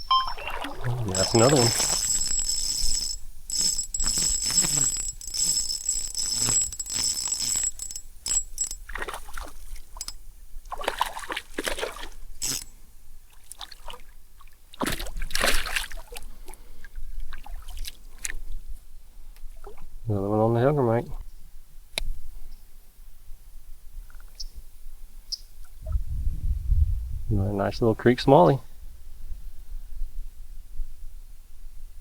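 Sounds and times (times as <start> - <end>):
water splashing and sloshing: 0.0 - 1.9, 8.9 - 10.0, 10.6 - 12.3, 13.3 - 16.6, 17.2 - 18.5.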